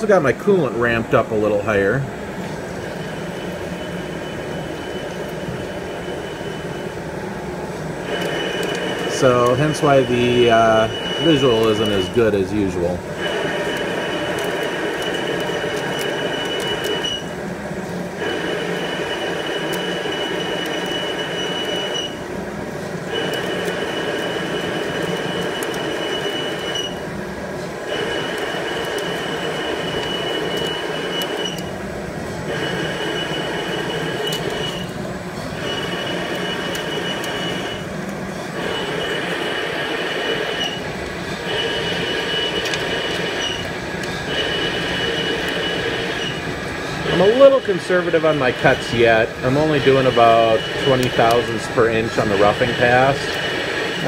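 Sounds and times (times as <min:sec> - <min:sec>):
steady high whine: 0:00.0 - 0:54.0
lathe cutting metal: 0:07.9 - 0:17.4, 0:32.4 - 0:54.0.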